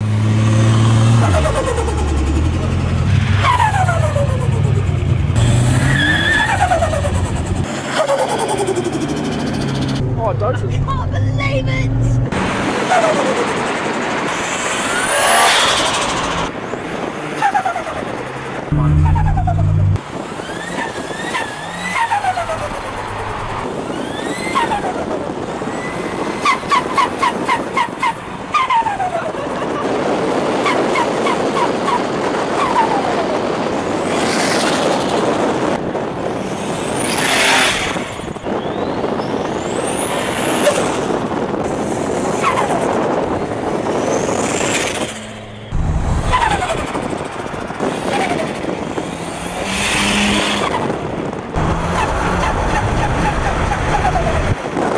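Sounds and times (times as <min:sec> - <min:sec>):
car engine revving: 0:00.0 - 0:27.4, 0:39.3 - 0:54.9.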